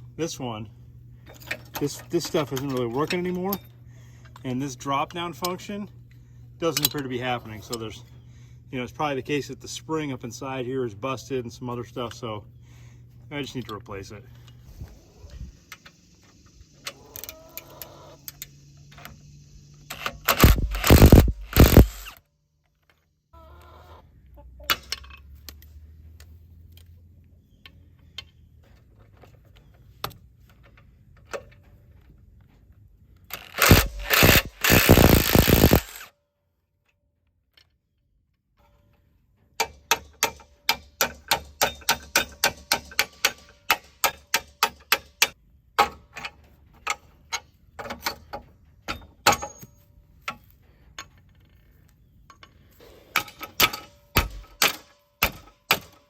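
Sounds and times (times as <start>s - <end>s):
power tool running: 19.8s - 22.2s, 33.3s - 36.1s
sharp ratcheting clicks: 19.9s - 22.2s, 33.3s - 36.1s.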